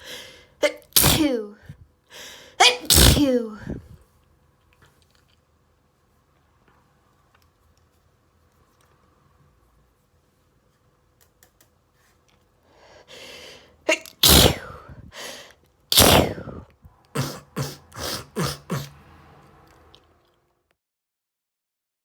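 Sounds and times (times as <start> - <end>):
breathy intake: 0.0 - 1.1, 12.8 - 16.6, 17.2 - 18.9
person sneezing: 0.0 - 1.5, 2.4 - 3.9, 13.1 - 19.0.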